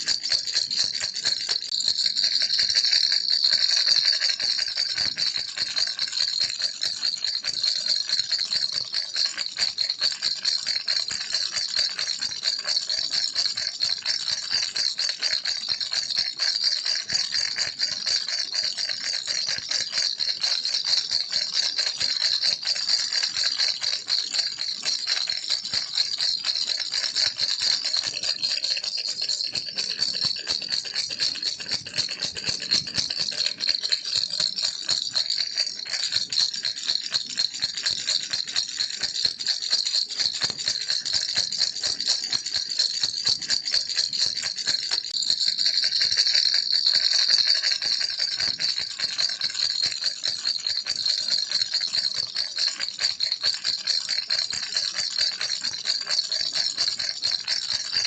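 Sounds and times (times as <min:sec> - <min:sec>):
baby rattle shaken: 0:00.0 - 0:06.7, 0:21.0 - 0:36.9, 0:37.6 - 0:50.3, 0:56.3 - 0:58.0.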